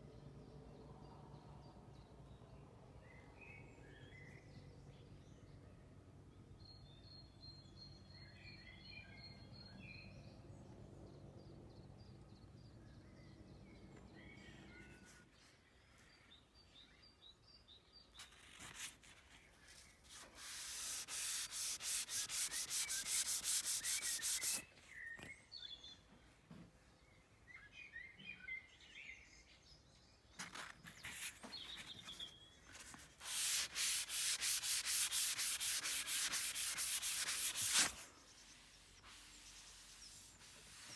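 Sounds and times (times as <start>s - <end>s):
sanding sponge scraping: 20.1s - 24.7s, 32.8s - 40.9s.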